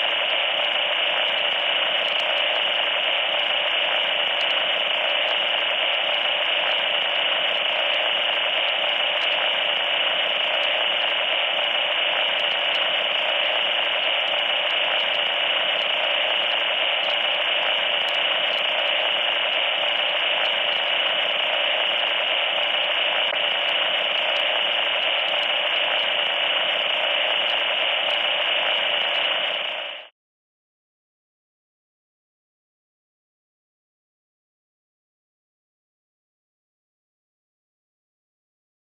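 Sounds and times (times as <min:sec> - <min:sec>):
electronic static hiss: 0:00.0 - 0:30.1.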